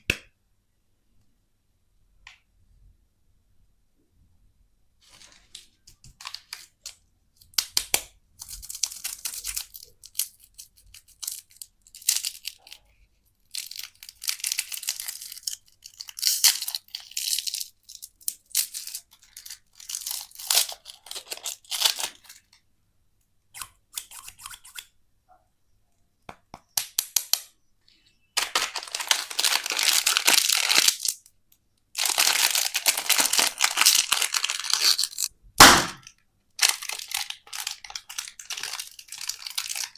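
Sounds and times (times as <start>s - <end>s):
candy wrappers crinkling: 5.6s - 22.6s, 28.4s - 39.9s.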